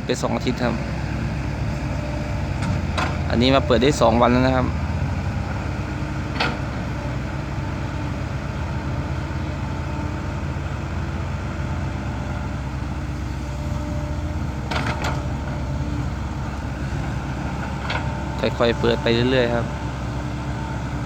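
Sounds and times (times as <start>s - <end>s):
heavy vehicle engine running: 0.0s - 21.0s.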